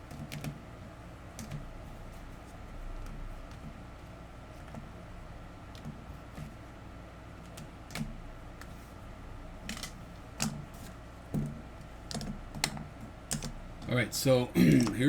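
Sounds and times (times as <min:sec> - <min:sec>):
faint steady hum: 0:00.0 - 0:15.0
computer keyboard typing: 0:12.1 - 0:13.6.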